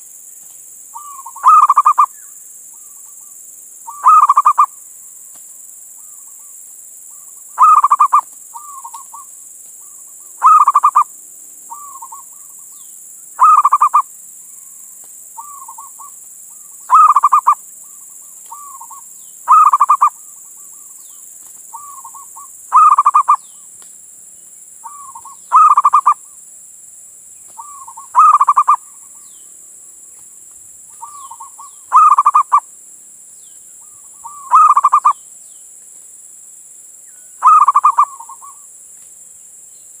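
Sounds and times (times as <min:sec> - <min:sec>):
dove cooing: 0:01.0 - 0:02.1, 0:03.9 - 0:04.8, 0:07.6 - 0:11.1, 0:11.7 - 0:12.6, 0:13.4 - 0:14.1, 0:15.4 - 0:20.9, 0:21.7 - 0:23.4, 0:24.8 - 0:26.3, 0:27.6 - 0:29.0, 0:31.0 - 0:32.7, 0:33.8 - 0:35.2, 0:37.4 - 0:38.6.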